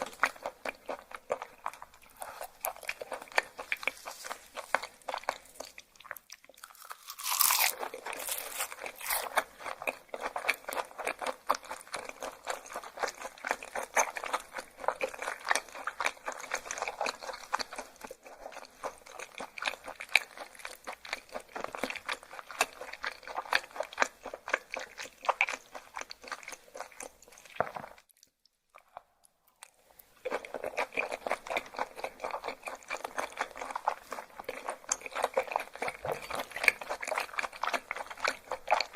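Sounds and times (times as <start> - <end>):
wet crunchy chewing: 0.0 - 38.9.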